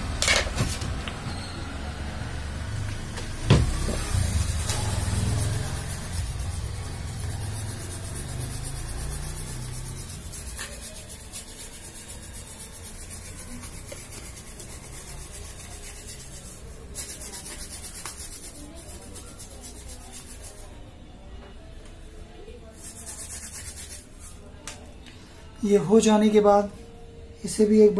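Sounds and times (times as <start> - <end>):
brush scrubbing circuit board: 4.0 - 20.8, 22.7 - 24.4.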